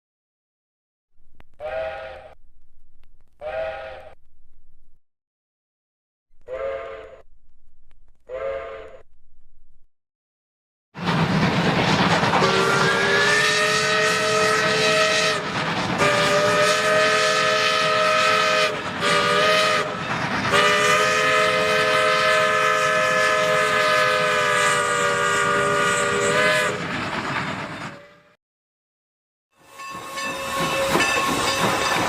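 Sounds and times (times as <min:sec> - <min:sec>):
steam locomotive chime whistle: 0:12.4 - 0:27.0, 0:29.6 - 0:32.0.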